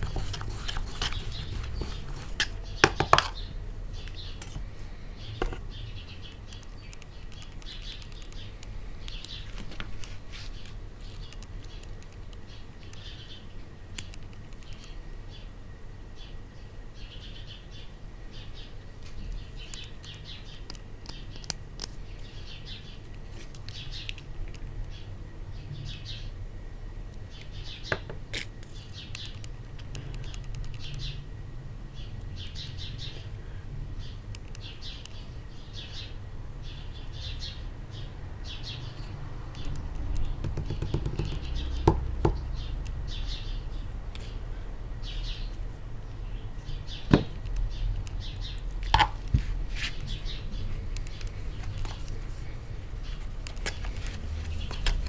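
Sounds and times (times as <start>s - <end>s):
small birds chirping: 0.0s - 26.4s, 27.2s - 55.0s
sharp clicks: 6.2s - 10.1s, 11.0s - 13.1s, 13.9s - 15.0s, 19.2s - 22.0s, 29.0s - 31.1s, 34.3s - 35.2s, 39.5s - 43.1s, 46.9s - 49.3s, 50.0s - 52.3s.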